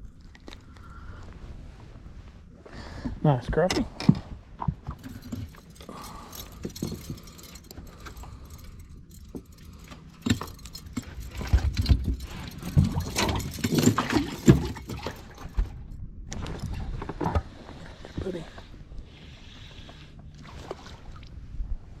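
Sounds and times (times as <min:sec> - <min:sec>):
handling clicks and rattles: 0:04.8 - 0:15.8.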